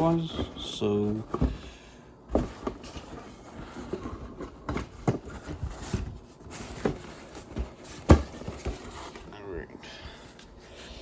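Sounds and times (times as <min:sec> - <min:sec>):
bags rustling: 0:00.0 - 0:01.6.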